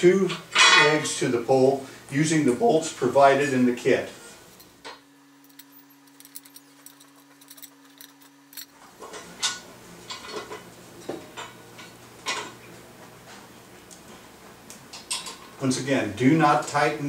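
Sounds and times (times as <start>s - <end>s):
low steady hum: 0.0s - 17.0s
metal parts clinking: 5.4s - 8.8s.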